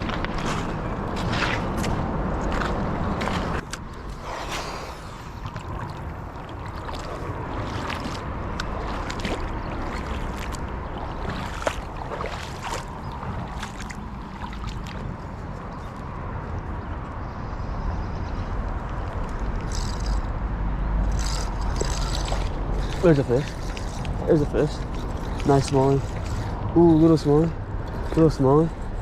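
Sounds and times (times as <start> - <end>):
highway traffic rumble: 0.0 - 29.0
creek water running: 4.0 - 15.5, 21.1 - 29.0.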